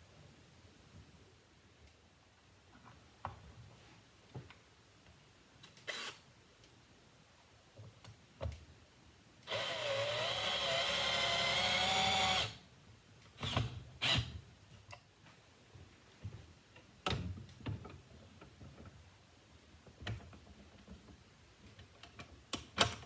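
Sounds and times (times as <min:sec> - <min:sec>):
power drill running: 0:05.9 - 0:06.2, 0:09.5 - 0:12.6.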